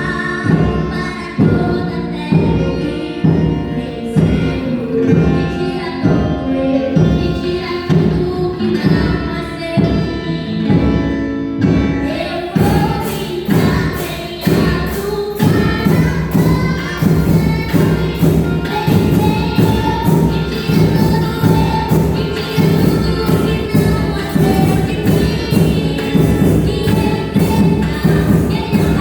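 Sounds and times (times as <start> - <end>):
voices singing a hymn: 0.0 - 11.0, 12.0 - 29.0
drums marching pulse: 12.6 - 29.0
fast high metallic beat: 12.6 - 29.0.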